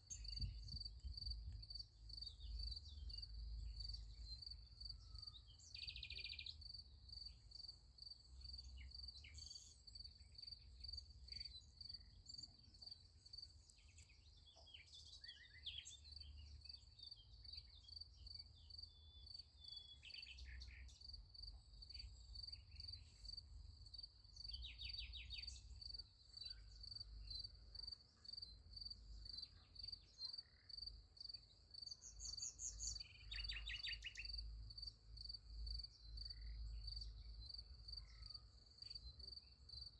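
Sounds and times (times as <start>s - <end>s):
crickets chirping: 18.3s - 39.9s
bird chirps and trills: 31.9s - 34.4s.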